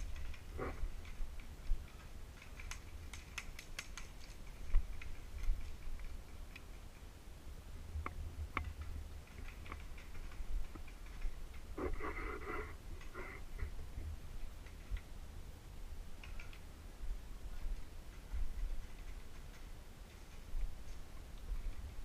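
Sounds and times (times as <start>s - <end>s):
sharp clicks and snaps: 0.0s - 6.8s, 16.2s - 16.6s.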